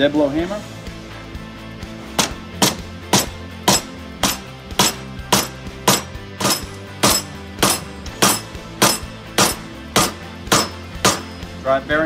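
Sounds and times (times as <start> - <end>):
hammer striking metal tool: 2.2 - 11.4.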